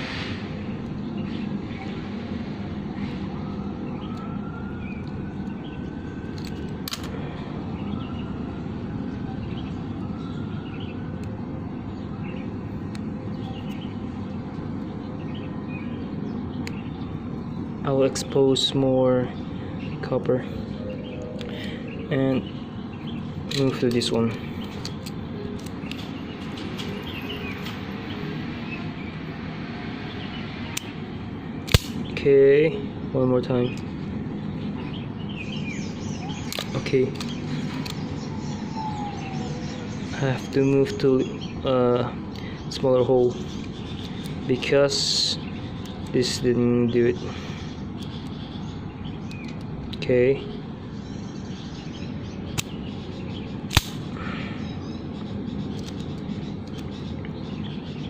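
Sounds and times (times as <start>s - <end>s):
sharp click: 31.7s - 32.1s, 53.7s - 54.1s.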